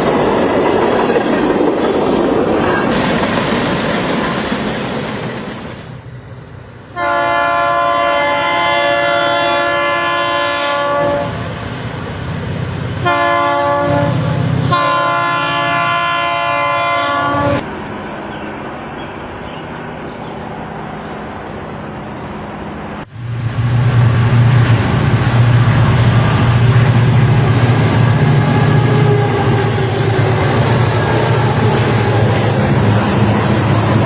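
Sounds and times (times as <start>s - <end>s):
train rumbling: 0.0s - 34.0s
locomotive air horn: 6.9s - 11.4s, 13.0s - 17.6s, 25.1s - 32.6s.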